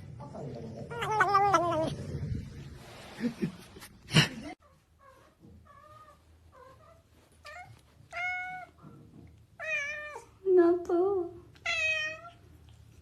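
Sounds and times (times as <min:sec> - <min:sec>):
cat meowing: 0:00.9 - 0:01.9, 0:11.6 - 0:12.4.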